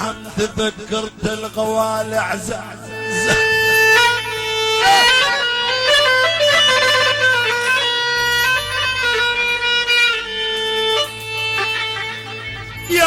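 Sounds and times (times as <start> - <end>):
violin-like lead melody: 2.8 - 13.0.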